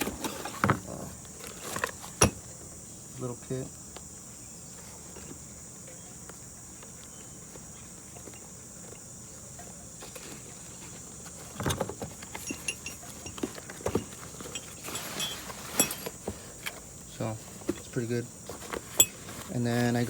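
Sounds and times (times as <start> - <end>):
metal tools clinking: 11.6 - 16.8, 18.8 - 19.5.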